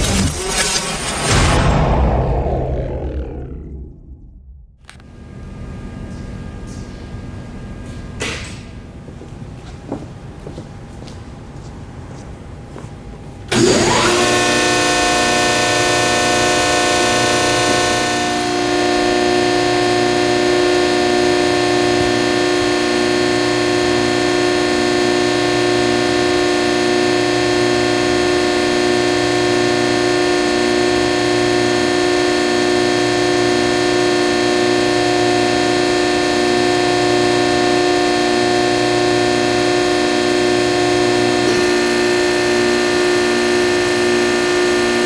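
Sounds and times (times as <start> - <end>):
hydraulic power unit humming: 0.0 - 45.0.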